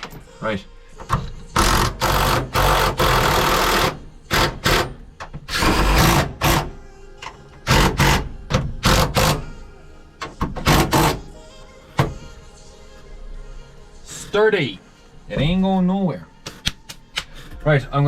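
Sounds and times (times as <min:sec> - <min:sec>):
power drill driving screws: 0:01.6 - 0:06.7, 0:07.7 - 0:09.4, 0:10.6 - 0:11.3.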